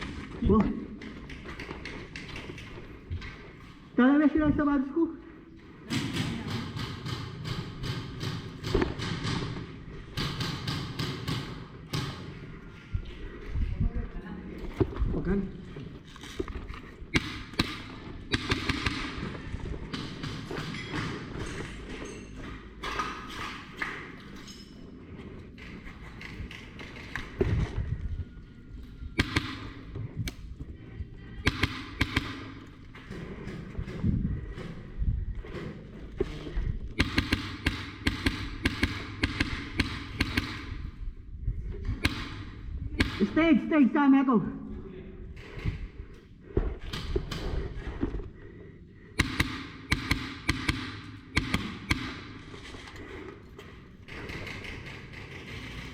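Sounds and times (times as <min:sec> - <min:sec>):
footsteps and gear bumping: 0:00.0 - 0:04.0, 0:17.8 - 0:31.4, 0:32.5 - 0:42.9.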